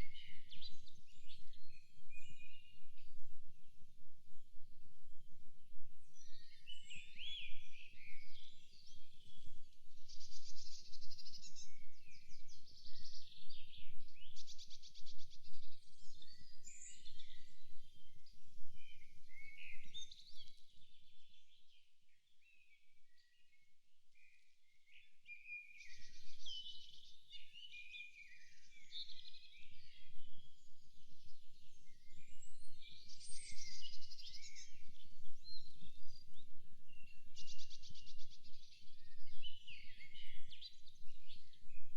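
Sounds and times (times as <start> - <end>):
songbirds singing and trilling: 0.0 - 41.9.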